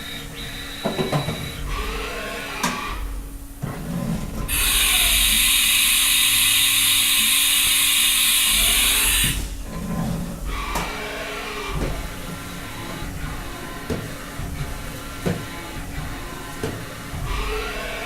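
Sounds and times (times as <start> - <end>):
servo whines: 0.0 - 3.1, 4.5 - 9.5.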